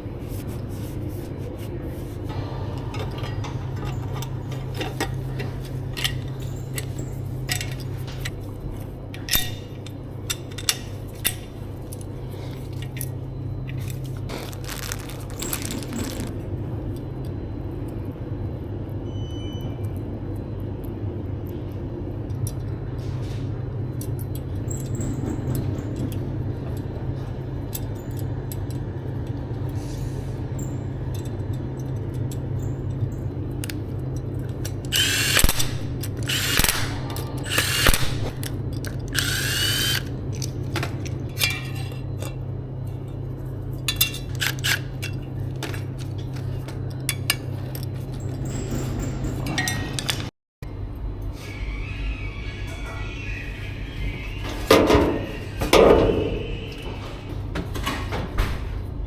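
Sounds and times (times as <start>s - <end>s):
power drill running: 35.0s - 36.9s, 37.5s - 38.4s, 39.2s - 40.1s.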